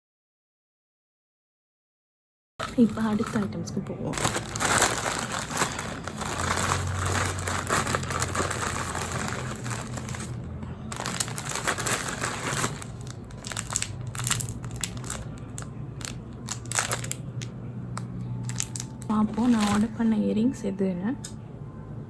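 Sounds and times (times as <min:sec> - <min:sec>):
plastic packaging crinkling: 0:02.6 - 0:20.0.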